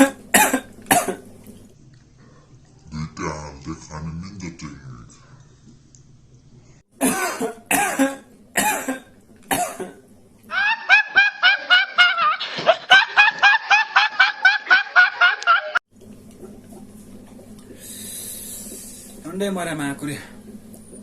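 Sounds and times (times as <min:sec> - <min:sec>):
hen cackling: 0:10.5 - 0:13.2.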